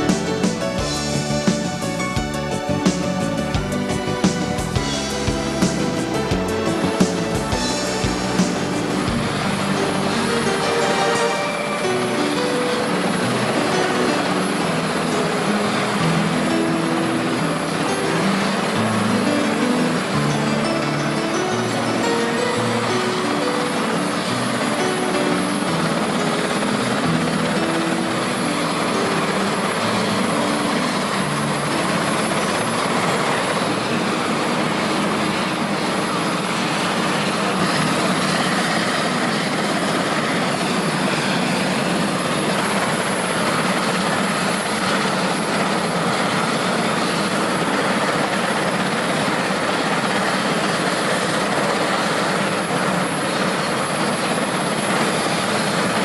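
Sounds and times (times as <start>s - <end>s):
helicopter engines and rotor: 0.0s - 56.0s.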